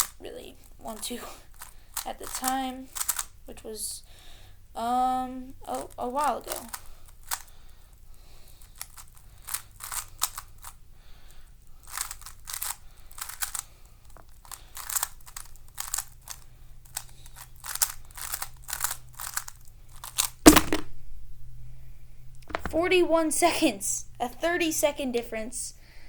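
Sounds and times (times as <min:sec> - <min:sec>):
puzzle cube plastic clacks: 0:00.0 - 0:03.4, 0:05.7 - 0:07.6, 0:08.5 - 0:10.8, 0:11.8 - 0:20.9, 0:22.4 - 0:22.8
loud knock: 0:20.5 - 0:20.9.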